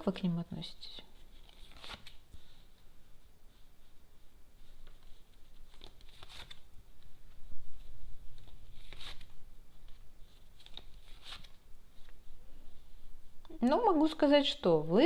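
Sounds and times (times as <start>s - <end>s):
cards rustling against cards: 1.2s - 2.6s, 4.7s - 12.2s.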